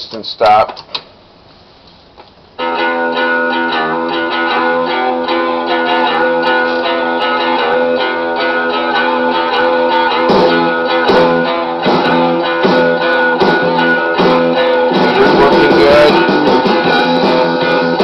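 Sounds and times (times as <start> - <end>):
guitar song: 2.6 - 18.0.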